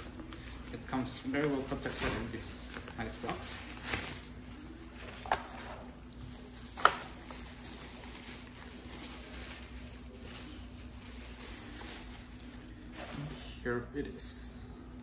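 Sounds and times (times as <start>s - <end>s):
faint steady hum: 0.0s - 15.0s
packaging being handled: 2.7s - 13.3s.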